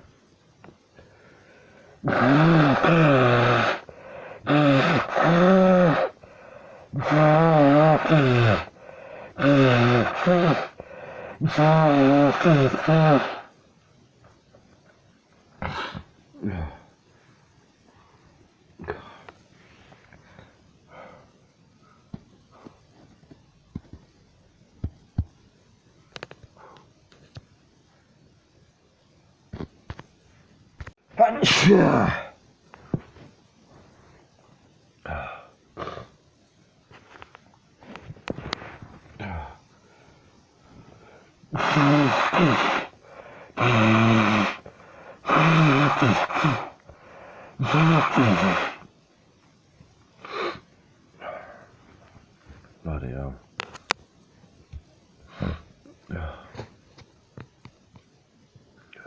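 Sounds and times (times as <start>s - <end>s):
short breaths: 1.0s - 13.6s, 38.4s - 48.9s
person sneezing: 2.0s - 6.2s, 6.9s - 13.5s, 15.6s - 16.8s, 31.2s - 32.4s, 41.6s - 48.9s, 55.3s - 56.7s.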